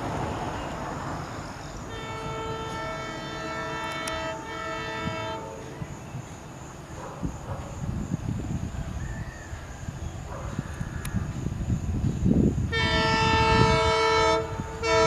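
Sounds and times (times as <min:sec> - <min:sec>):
locomotive horn blast: 0:01.9 - 0:05.8, 0:12.7 - 0:15.0.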